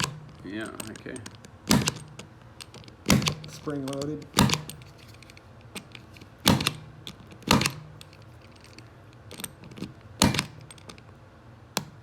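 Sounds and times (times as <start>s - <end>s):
punch-down tool snapping: 1.6s - 4.8s.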